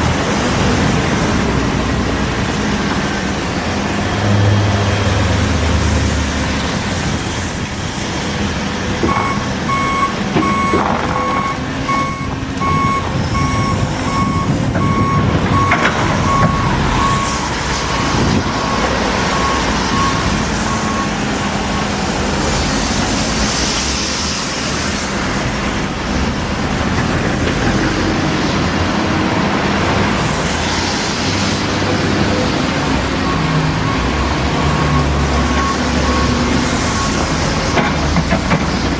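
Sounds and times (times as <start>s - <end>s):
excavator engine running: 0.0s - 38.9s
travel alarm beeping: 9.1s - 17.4s, 18.0s - 21.9s, 33.2s - 37.3s.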